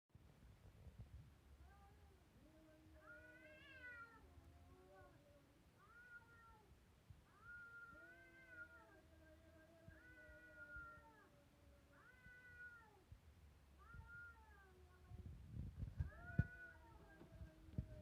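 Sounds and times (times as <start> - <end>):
cat moaning low: 1.6 - 6.7, 7.3 - 13.1, 16.0 - 18.0
cat yowling: 1.6 - 6.7, 7.3 - 13.1, 13.8 - 15.0, 16.1 - 18.0.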